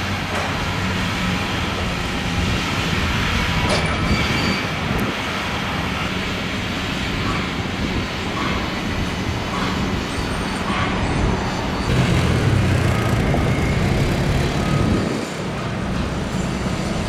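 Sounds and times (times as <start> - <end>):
passing vehicles rumble: 11.3 - 17.0
heavy vehicle passing: 11.9 - 17.0.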